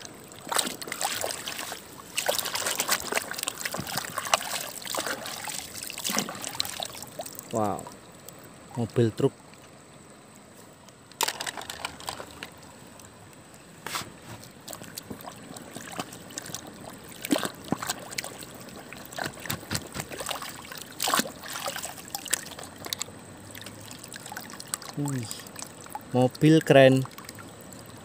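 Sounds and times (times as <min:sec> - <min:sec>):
sharp splashes or knocks: 0:00.0 - 0:07.4, 0:13.9 - 0:22.5
water trickling and sloshing: 0:00.0 - 0:28.0.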